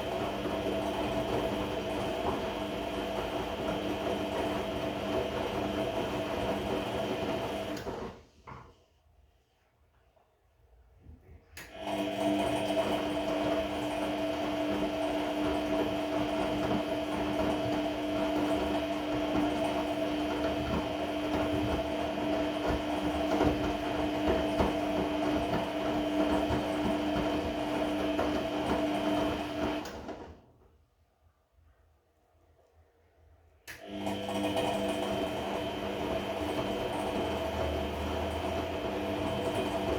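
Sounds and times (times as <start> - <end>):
washing machine drum turning: 11.7 - 30.2.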